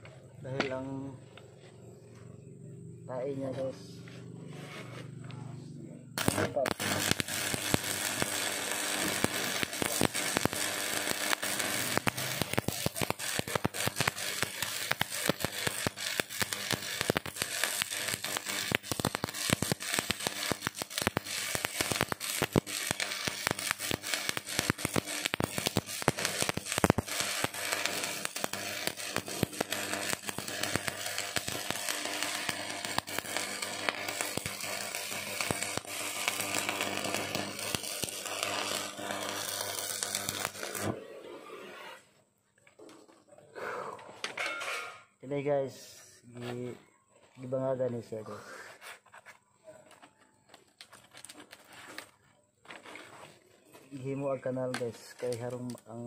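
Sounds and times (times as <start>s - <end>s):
arc welding crackle: 6.2s - 41.9s, 53.8s - 56.0s.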